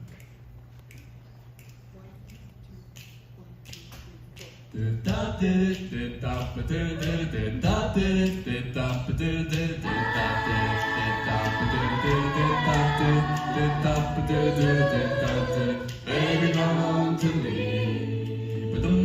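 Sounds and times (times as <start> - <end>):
a cappella group singing: 4.7 - 19.0.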